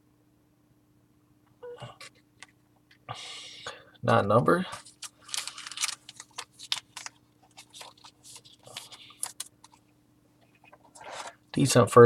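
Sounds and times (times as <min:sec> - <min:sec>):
trading cards flipped by hand: 0:04.9 - 0:09.9.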